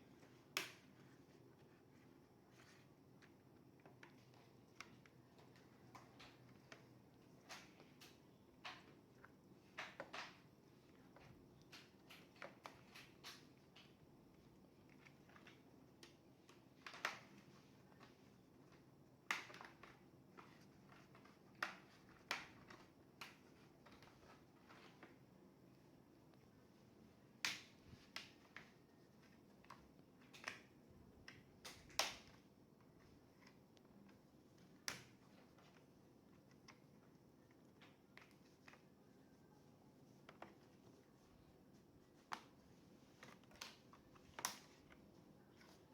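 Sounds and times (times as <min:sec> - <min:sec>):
clicks and taps handling laptop: 0:02.7 - 0:25.2, 0:42.2 - 0:45.9.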